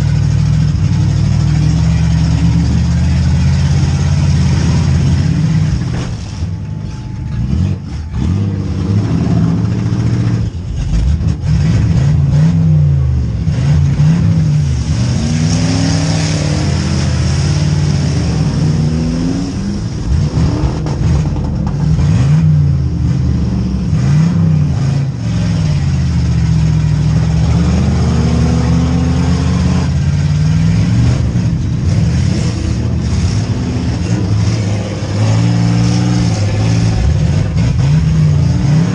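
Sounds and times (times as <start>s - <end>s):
car engines revving: 0.0s - 38.9s.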